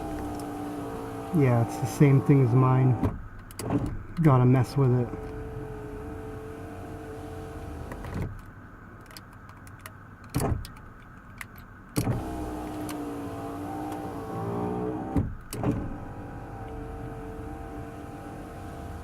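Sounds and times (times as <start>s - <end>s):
power window motor running: 0.0s - 3.8s, 5.0s - 8.3s, 12.0s - 19.0s.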